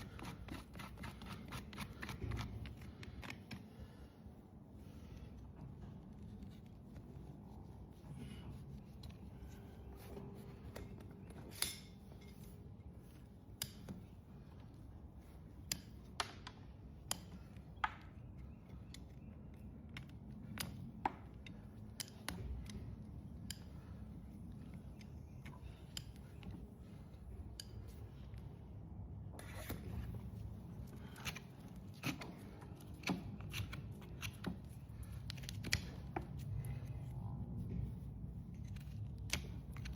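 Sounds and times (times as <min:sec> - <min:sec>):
hoof nippers snipping: 0:00.0 - 0:03.7
low steady background: 0:00.0 - 0:39.9.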